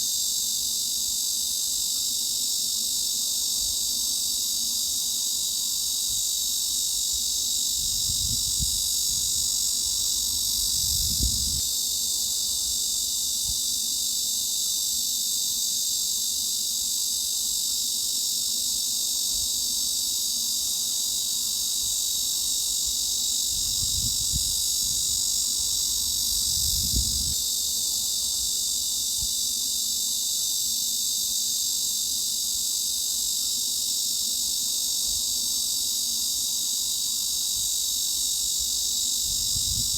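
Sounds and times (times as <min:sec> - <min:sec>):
cicadas singing: 0:00.0 - 0:39.9.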